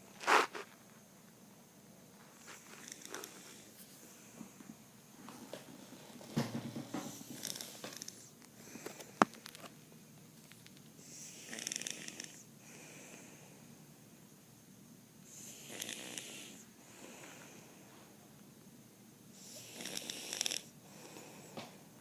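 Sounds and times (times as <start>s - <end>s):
person snoring: 11.1s - 12.4s, 15.4s - 17.4s, 19.4s - 21.5s.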